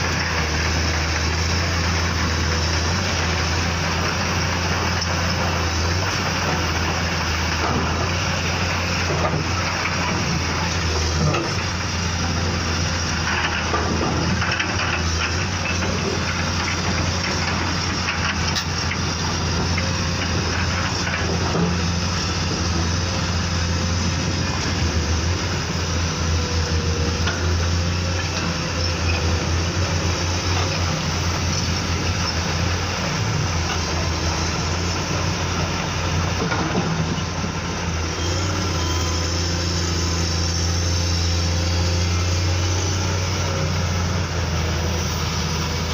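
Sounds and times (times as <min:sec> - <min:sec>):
low engine-like drone: 0:00.0 - 0:45.9.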